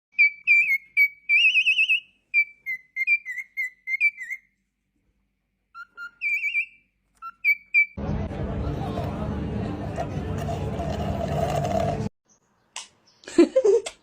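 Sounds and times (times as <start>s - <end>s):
parrot whistling: 0.2s - 4.5s, 5.8s - 8.0s.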